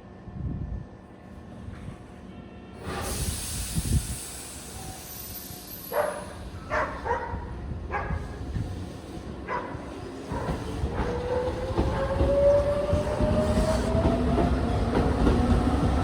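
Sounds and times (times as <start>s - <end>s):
train air brake hiss: 2.8s - 6.7s.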